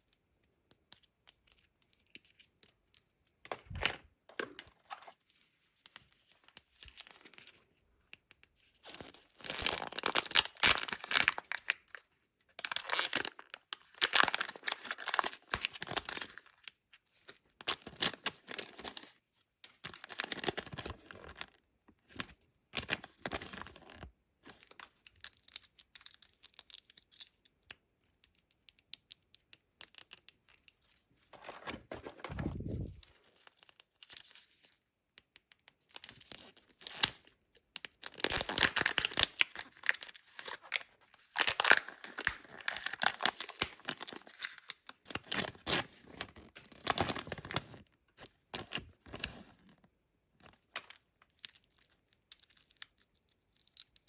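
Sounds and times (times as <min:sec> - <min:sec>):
wrappers tearing and crinkling: 0:08.9 - 0:11.9, 0:12.6 - 0:16.5, 0:37.9 - 0:47.8.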